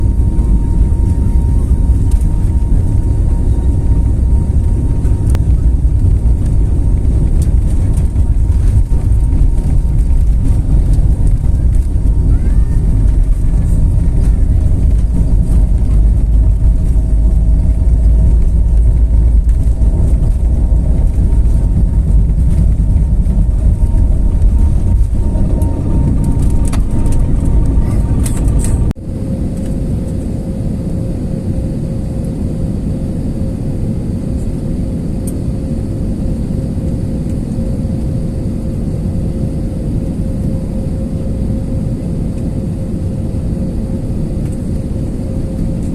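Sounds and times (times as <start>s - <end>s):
jet engine rumble: 0.0s - 45.9s
steady whine: 0.0s - 45.9s.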